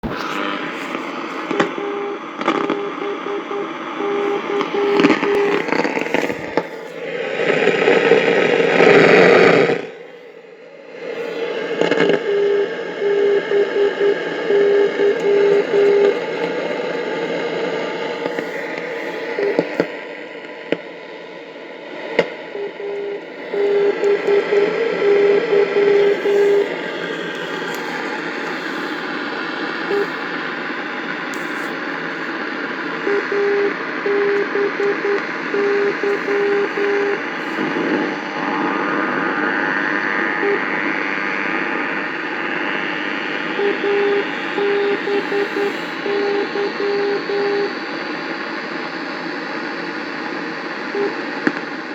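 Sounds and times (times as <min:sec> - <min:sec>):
radio static hiss: 0:00.0 - 0:51.9
long and short beeps: 0:01.3 - 0:06.7, 0:11.4 - 0:16.7, 0:19.0 - 0:19.9, 0:22.5 - 0:29.1, 0:29.8 - 0:30.3, 0:32.9 - 0:37.8, 0:40.4 - 0:40.7, 0:43.6 - 0:47.8, 0:51.0 - 0:51.2.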